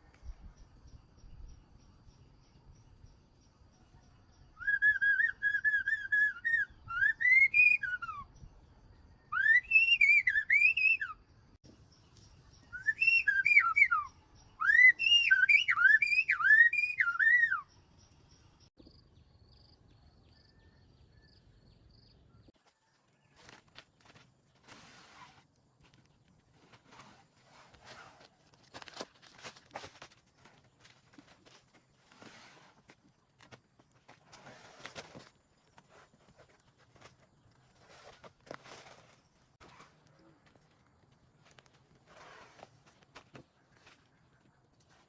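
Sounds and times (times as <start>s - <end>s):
bird singing whistled phrases: 4.6s - 8.4s, 9.1s - 11.3s, 12.6s - 17.8s.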